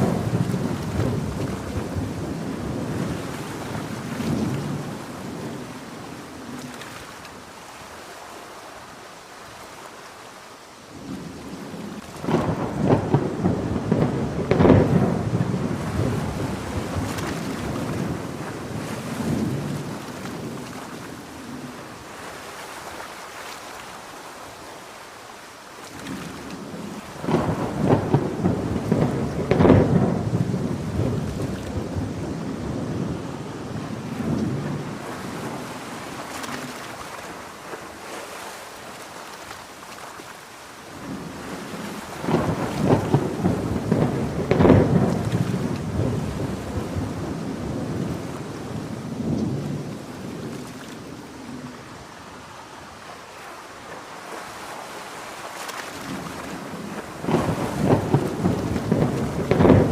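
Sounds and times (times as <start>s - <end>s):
thunder rolling: 0.0s - 6.2s, 11.0s - 20.8s, 26.6s - 36.8s, 41.0s - 50.6s, 56.1s - 59.9s
heavy rain: 0.0s - 59.9s.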